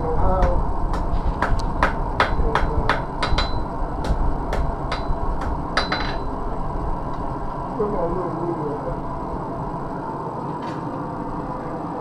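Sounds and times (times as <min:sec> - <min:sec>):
low forge rumble: 0:00.0 - 0:12.0
hammer striking iron on anvil: 0:00.4 - 0:06.3.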